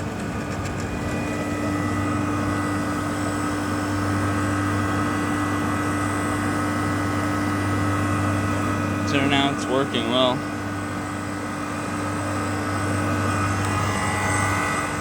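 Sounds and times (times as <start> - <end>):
air conditioner humming: 1.0 - 15.0.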